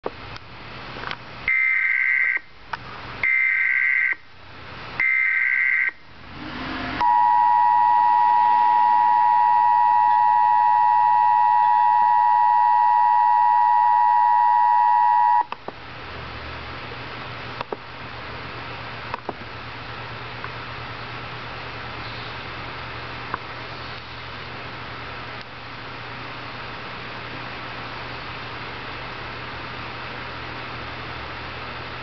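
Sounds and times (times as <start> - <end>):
two-tone attention signal: 7.0 - 15.5.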